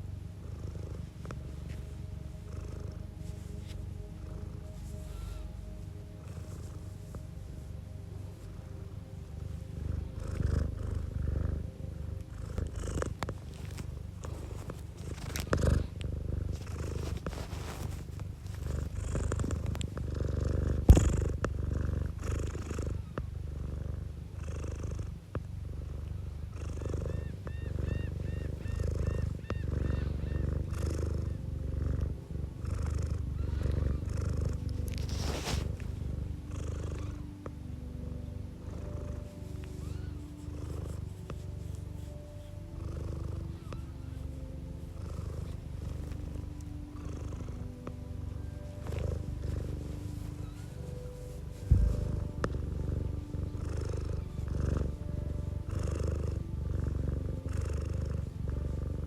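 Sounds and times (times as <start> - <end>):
cat purring: 0.0 - 59.0.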